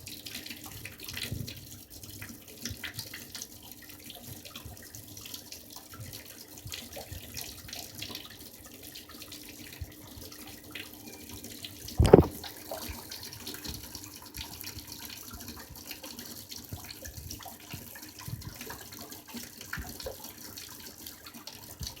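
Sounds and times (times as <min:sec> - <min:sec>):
loud low thump: 0:12.0 - 0:12.4
tap running into a sink: 0:12.0 - 0:14.5.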